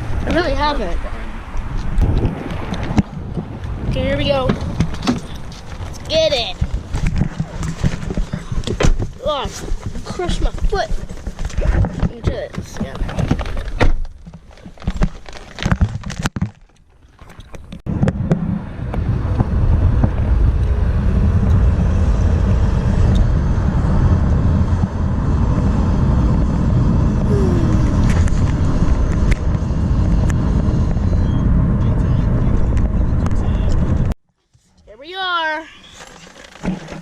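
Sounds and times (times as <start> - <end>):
car rumble from inside cabin: 0.0 - 7.6, 17.9 - 34.2.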